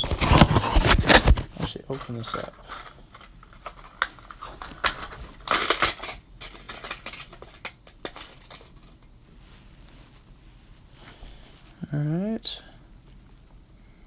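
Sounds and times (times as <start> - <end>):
plastic package crinkling: 0.0 - 9.1.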